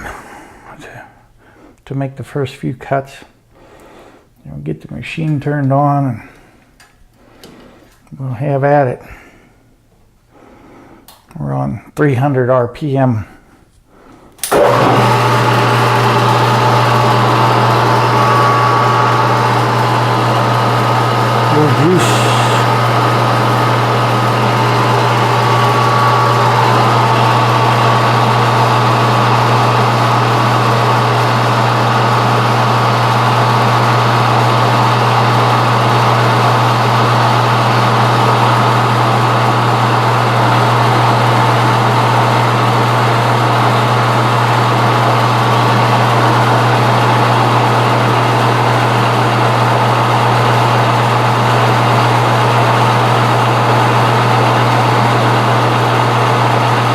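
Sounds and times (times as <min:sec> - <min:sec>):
metal lathe motor hum: 0:14.5 - 0:56.9.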